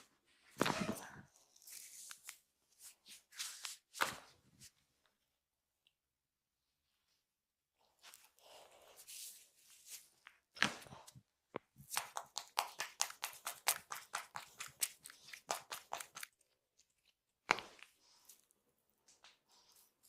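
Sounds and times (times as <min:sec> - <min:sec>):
hands rubbing skin: 0:01.6 - 0:04.1, 0:11.8 - 0:16.4
rapid massage slaps: 0:11.9 - 0:16.3.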